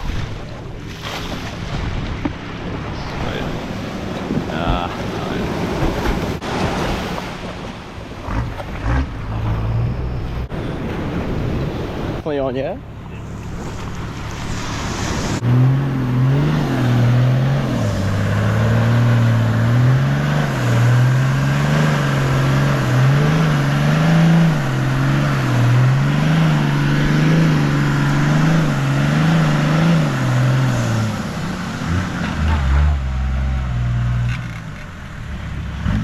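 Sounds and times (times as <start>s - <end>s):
vehicle engine revving hard: 14.5s - 34.3s.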